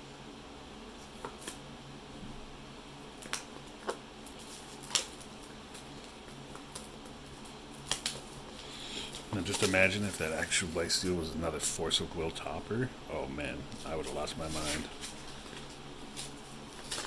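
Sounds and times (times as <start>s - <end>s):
low steady hum: 0.0s - 17.0s
cards being flicked through: 9.1s - 11.2s.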